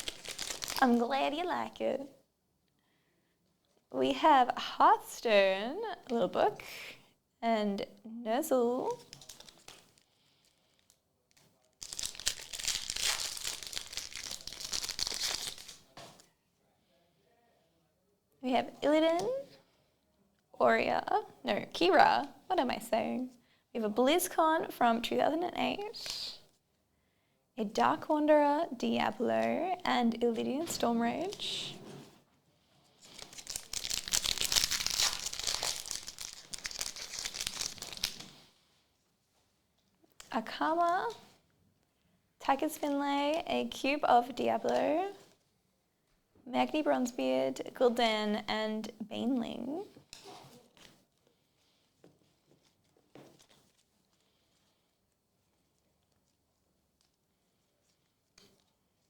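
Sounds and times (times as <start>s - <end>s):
card pack wrapper crinkling and tearing: 0.0s - 0.9s, 9.1s - 10.0s, 11.8s - 15.9s, 33.0s - 38.4s.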